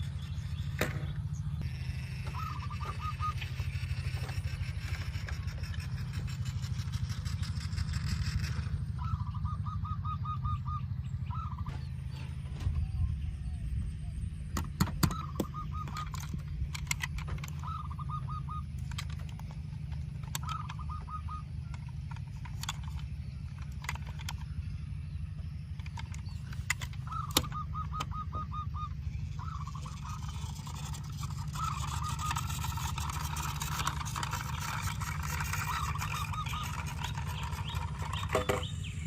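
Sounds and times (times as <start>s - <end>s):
low hum: 0.0s - 39.0s
fowl trilling calls: 1.8s - 6.4s, 26.9s - 38.7s.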